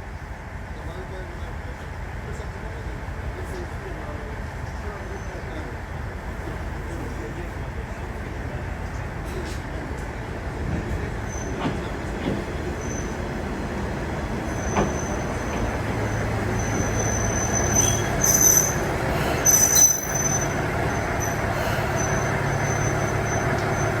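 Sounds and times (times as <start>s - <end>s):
train wheels rumbling on rail: 0.0s - 24.0s
high-pitched wheel squeal: 14.5s - 24.0s.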